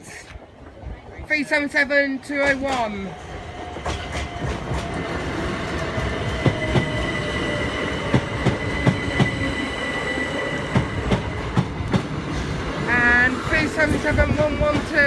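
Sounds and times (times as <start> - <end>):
train rumble: 0.9 - 15.0
train wheels knocking over rail joints: 2.4 - 7.2.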